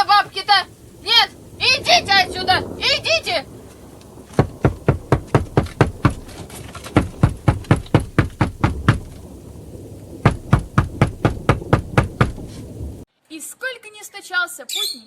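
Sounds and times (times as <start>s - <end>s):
rapid knocking on a door: 4.3s - 9.2s, 10.2s - 12.5s.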